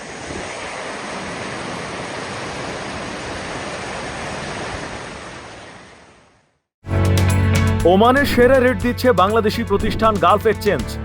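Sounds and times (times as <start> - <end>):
heavy water rushing: 0.0 - 6.0.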